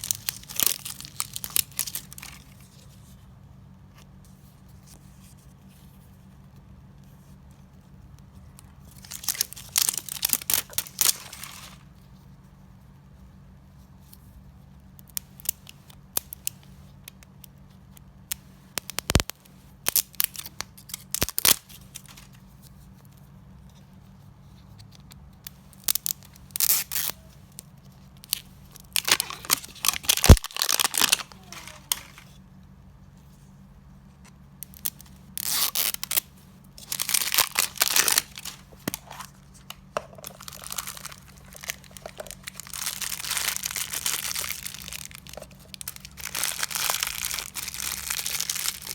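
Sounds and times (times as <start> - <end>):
packaging tearing and crinkling: 0.0 - 2.9, 8.9 - 11.8, 18.8 - 22.4, 25.8 - 27.3, 28.2 - 32.4, 34.6 - 48.9.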